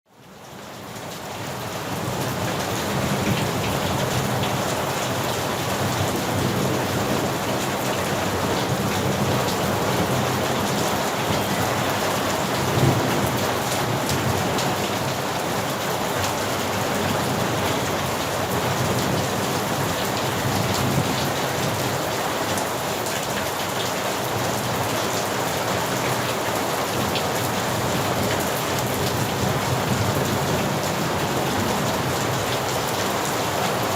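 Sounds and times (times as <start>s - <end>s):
heavy rain falling: 0.1s - 33.9s
low rolling thunder: 12.4s - 15.1s.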